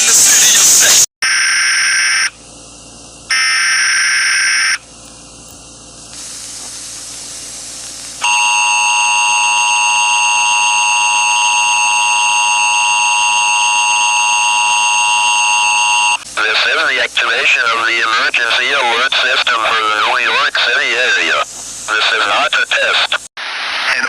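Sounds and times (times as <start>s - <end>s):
two-tone attention signal: 8.2s - 16.2s.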